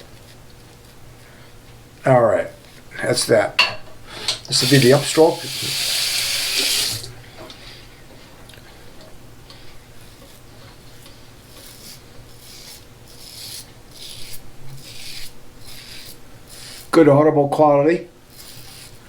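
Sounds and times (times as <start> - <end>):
razor scraping stubble: 4.2 - 7.1, 10.0 - 17.0, 18.3 - 19.0.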